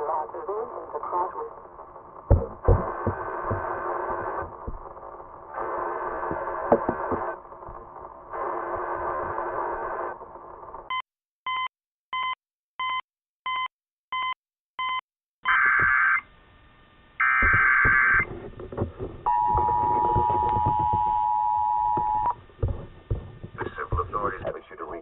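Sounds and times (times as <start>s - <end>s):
radio static crackling: 0.0s - 10.9s, 15.5s - 16.3s, 17.2s - 25.0s
data tone bursts: 17.2s - 18.3s, 19.3s - 22.4s
short beeps: 19.3s - 22.4s
two-tone attention signal: 19.3s - 22.4s.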